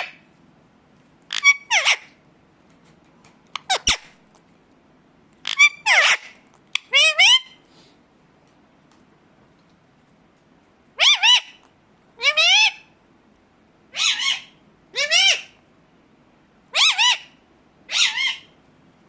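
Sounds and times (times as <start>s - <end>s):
parakeet squawking: 0.0s - 0.2s, 1.3s - 2.2s, 3.6s - 4.2s, 5.4s - 7.6s, 11.0s - 11.6s, 12.2s - 12.9s, 13.9s - 15.6s, 16.7s - 18.5s.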